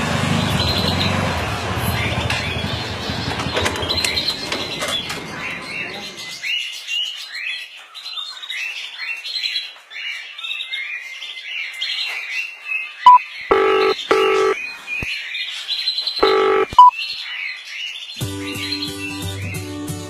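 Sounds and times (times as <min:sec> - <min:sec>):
birds chirping: 0:00.0 - 0:08.8, 0:10.2 - 0:19.7
motorcycle alarm beeps and toots: 0:13.1 - 0:14.6, 0:16.2 - 0:16.9.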